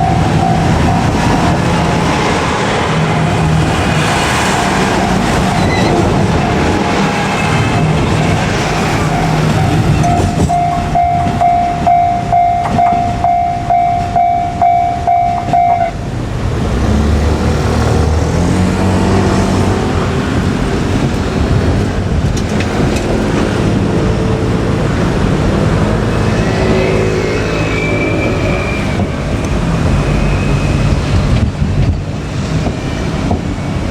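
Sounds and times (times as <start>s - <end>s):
level crossing warning bell: 0.0s - 1.8s, 10.0s - 16.0s
diesel railcar rumbling past: 0.0s - 33.9s.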